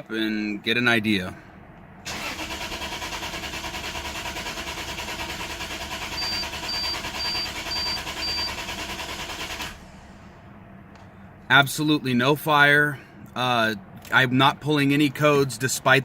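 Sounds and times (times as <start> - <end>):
engine cranking without starting: 2.1 - 10.0
short high beeps: 6.2 - 8.6.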